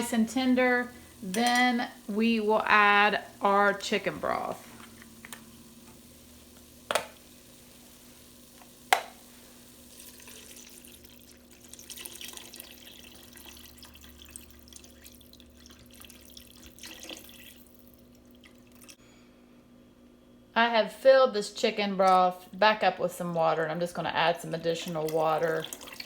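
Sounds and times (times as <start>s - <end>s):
broth pouring into pot: 1.9s - 19.0s, 25.0s - 26.0s.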